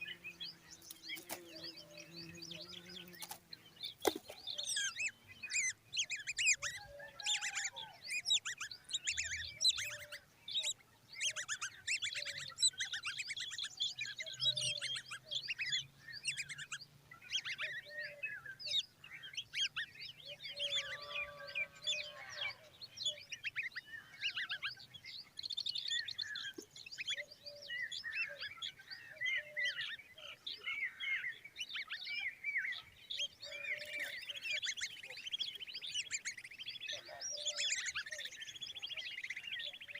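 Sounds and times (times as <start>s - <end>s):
nestlings begging with high chirps: 0.0s - 39.9s.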